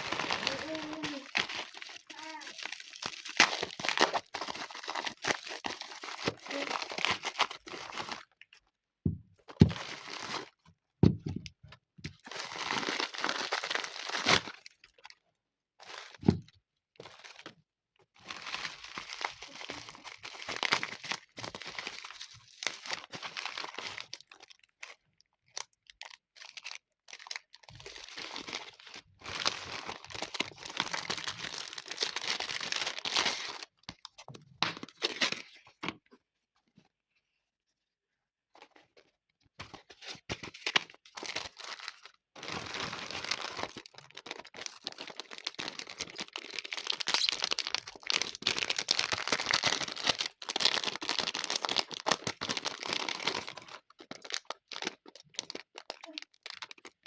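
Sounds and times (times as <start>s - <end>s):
packaging crinkling and tearing: 0.0s - 8.6s, 9.6s - 10.6s, 12.1s - 15.2s, 18.2s - 35.7s, 39.7s - 57.0s.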